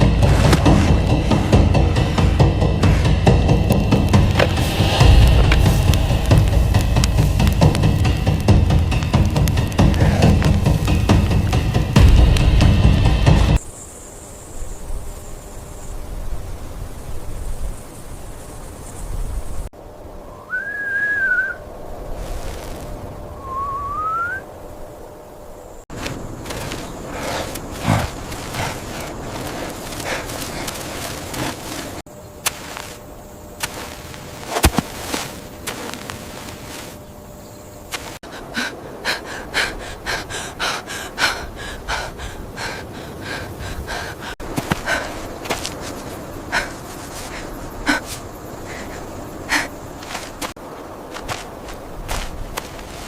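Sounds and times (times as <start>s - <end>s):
person panting: 0.0s - 3.7s, 9.9s - 10.4s, 26.5s - 32.0s, 38.2s - 50.5s
person whistling: 20.5s - 21.6s, 23.4s - 24.4s.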